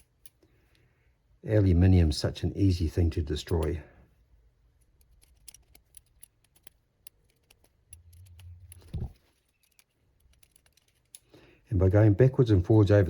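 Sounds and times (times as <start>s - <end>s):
screwdriver clicks and ticks: 4.8s - 11.3s.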